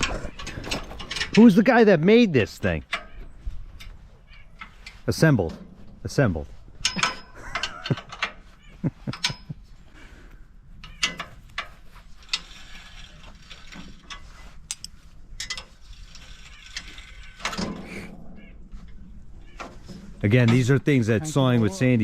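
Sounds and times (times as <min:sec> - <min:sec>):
metal parts clicking and clinking: 0:00.0 - 0:01.7, 0:02.4 - 0:08.5, 0:09.1 - 0:09.6, 0:10.8 - 0:18.2.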